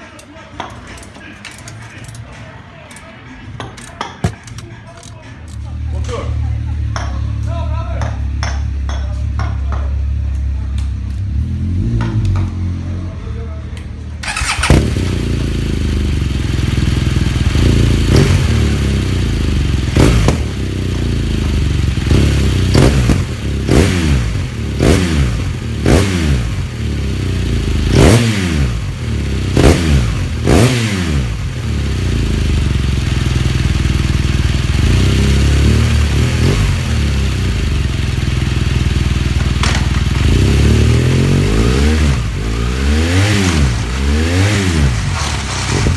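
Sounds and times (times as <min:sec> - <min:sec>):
motorcycle engine revving: 0:11.1 - 0:13.0, 0:14.2 - 0:45.9.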